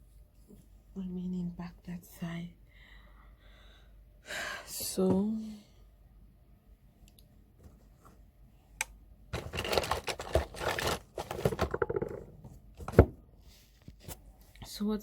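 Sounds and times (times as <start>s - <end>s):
scratchy rustling handling noise: 9.4s - 11.8s.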